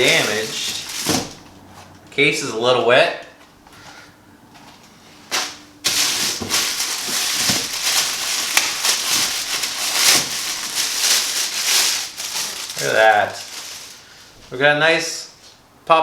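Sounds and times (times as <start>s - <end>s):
packaging crinkling and rustling: 0.0s - 1.9s, 5.3s - 14.3s.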